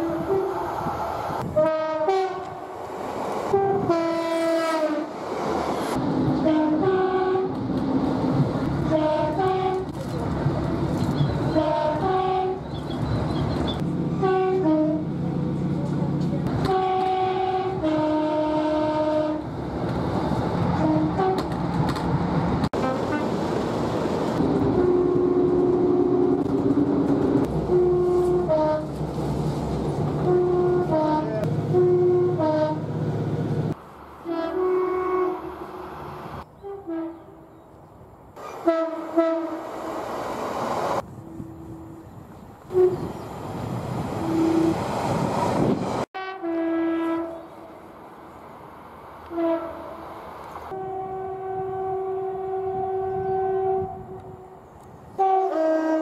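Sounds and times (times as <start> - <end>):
train two-tone horns: 0.0 - 0.8, 1.4 - 2.7, 3.5 - 5.2, 6.4 - 7.6, 8.8 - 9.9, 11.5 - 12.6, 14.2 - 15.1, 16.5 - 19.5, 20.8 - 21.6, 22.8 - 23.4, 24.6 - 26.5, 27.7 - 29.0, 30.2 - 32.9, 34.2 - 35.9, 36.6 - 37.5, 38.4 - 40.1, 42.7 - 43.2, 44.2 - 44.8, 46.2 - 47.8, 49.2 - 50.1, 50.7 - 54.6, 55.2 - 56.0
train rumble: 0.0 - 56.0.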